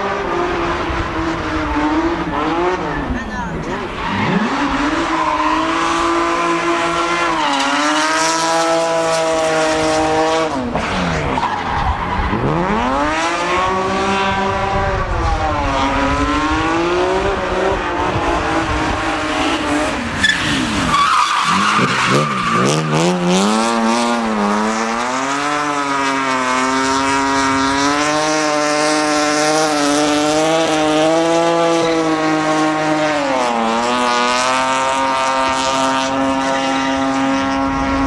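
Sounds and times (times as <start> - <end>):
car engine revving hard: 0.0 - 38.0
tyre squeal: 18.2 - 23.8.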